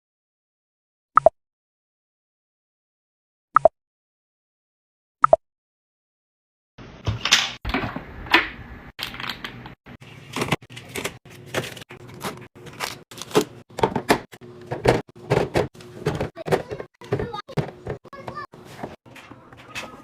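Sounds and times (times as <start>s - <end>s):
containers clacking and knocking: 10.4s - 20.0s.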